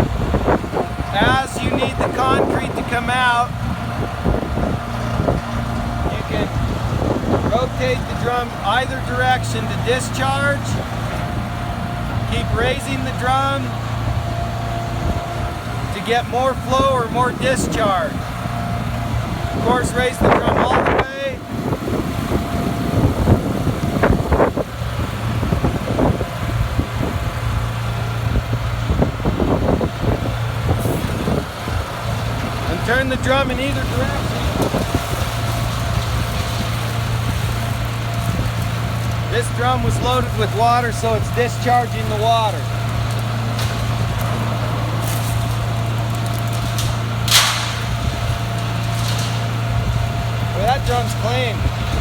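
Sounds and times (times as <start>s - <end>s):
concrete mixer engine running: 0.0s - 52.0s
water discharging: 0.0s - 52.0s
machine knocks and clanks: 43.1s - 50.1s.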